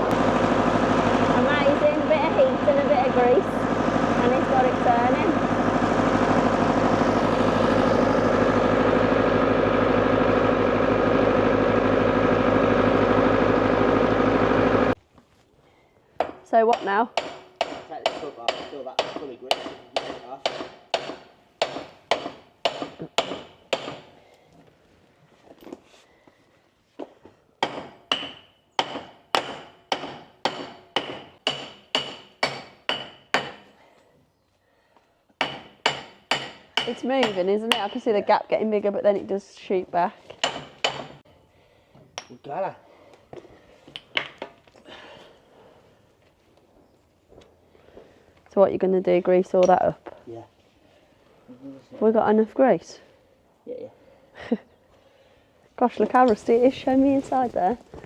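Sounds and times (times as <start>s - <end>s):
engine idling: 0.0s - 15.0s
hammer striking steel: 16.2s - 24.1s, 27.6s - 33.8s, 35.4s - 38.1s, 40.4s - 41.2s.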